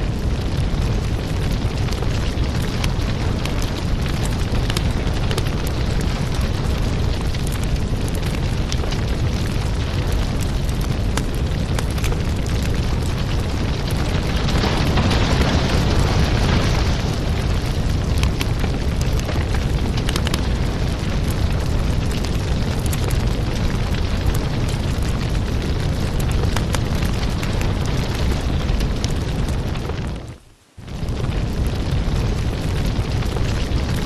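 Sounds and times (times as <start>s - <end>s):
fire crackling and popping: 0.0s - 34.0s
low rumble of flames: 0.0s - 34.0s
fire hissing: 0.1s - 33.9s.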